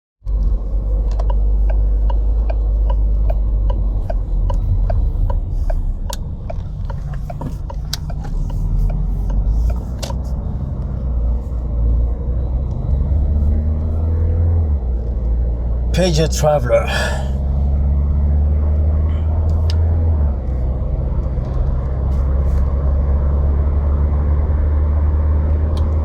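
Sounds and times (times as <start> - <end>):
car engine rumbling: 0.2 - 26.0
light ticking: 0.3 - 10.2.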